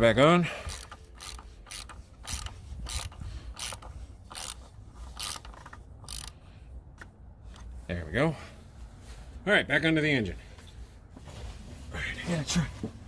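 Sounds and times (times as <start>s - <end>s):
socket ratchet clicking: 0.7s - 6.4s.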